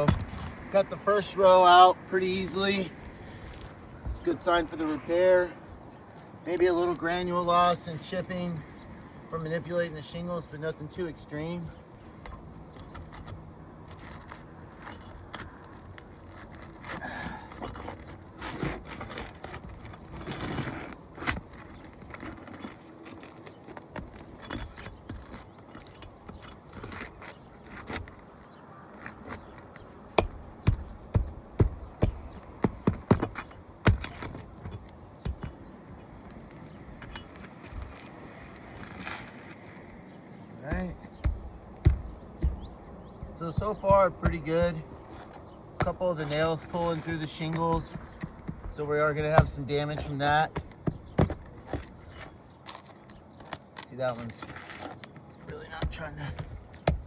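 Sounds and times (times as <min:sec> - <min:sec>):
pry bar scraping shingles: 0:00.0 - 0:05.0, 0:06.4 - 0:57.0
sharp knocks: 0:40.7 - 0:44.8.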